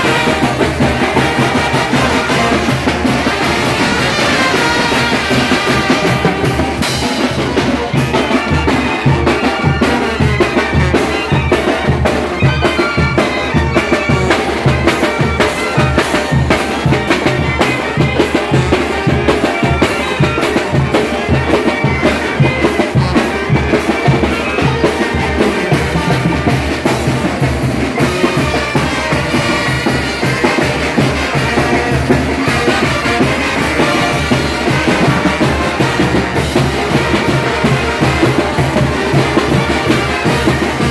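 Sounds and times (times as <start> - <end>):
bass drum and snare beat: 0.0 - 12.1
brass band playing: 0.0 - 40.9.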